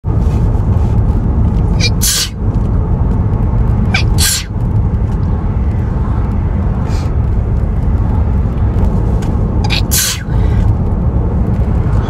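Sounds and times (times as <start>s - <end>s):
steady low rumble: 0.0s - 12.0s
person sneezing: 1.8s - 2.4s, 3.9s - 4.5s, 9.7s - 10.6s.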